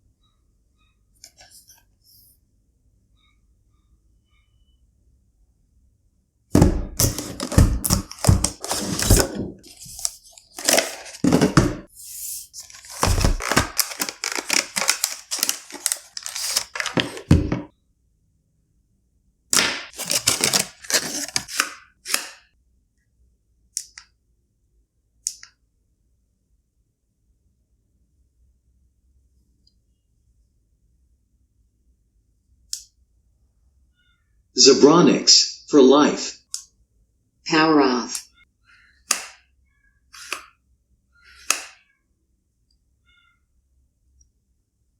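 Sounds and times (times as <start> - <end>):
box and plastic parts handled: 6.6 - 17.7, 19.6 - 22.3.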